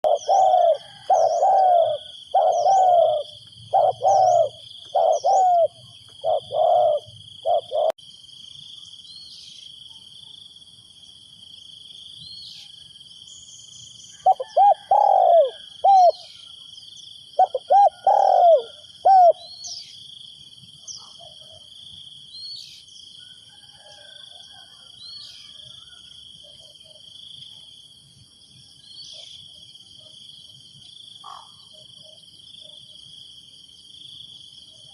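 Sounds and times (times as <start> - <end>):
dove cooing: 0.0 - 8.0, 14.2 - 16.3, 17.4 - 19.5
small birds chirping: 0.0 - 8.0, 12.2 - 20.0
high insect drone: 0.1 - 21.1.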